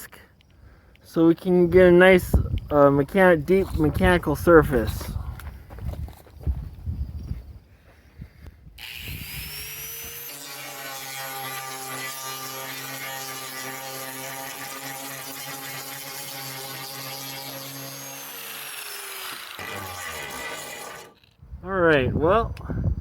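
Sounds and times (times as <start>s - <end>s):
angle grinder grinding: 8.8s - 21.4s.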